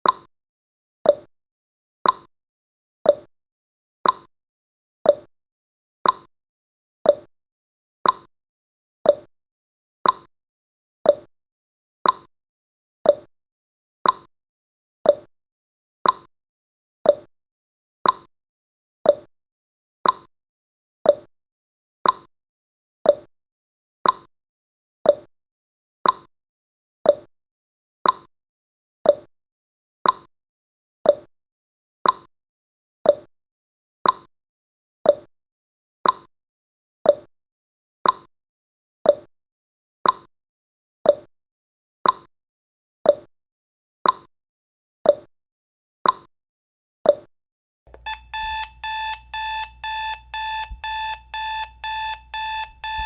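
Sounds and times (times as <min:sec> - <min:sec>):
alarm clock beeping: 0:47.9 - 0:53.0
clock ticking: 0:47.9 - 0:53.0.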